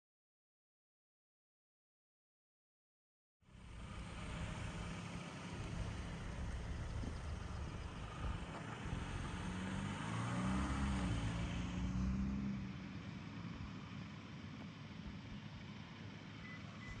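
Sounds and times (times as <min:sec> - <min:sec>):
car passing by: 0:03.6 - 0:12.9.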